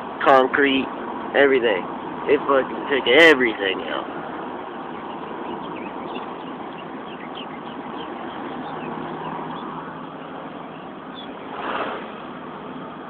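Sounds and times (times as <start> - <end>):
bird chirps: 4.6 - 12.2.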